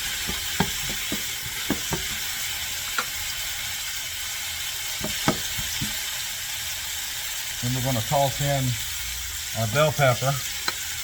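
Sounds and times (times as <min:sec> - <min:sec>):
garlic and onion sizzling in oil: 0:00.0 - 0:11.0
utensil clicking against pan: 0:00.1 - 0:02.3, 0:05.0 - 0:06.0, 0:10.6 - 0:10.9.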